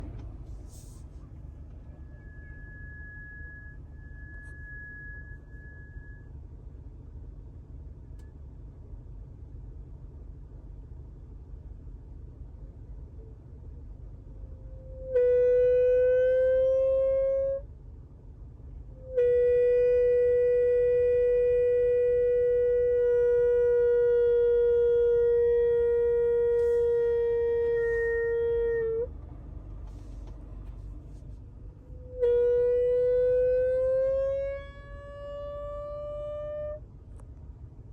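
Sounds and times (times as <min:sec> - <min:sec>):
air conditioning valve moaning: 0:19.0 - 0:37.9.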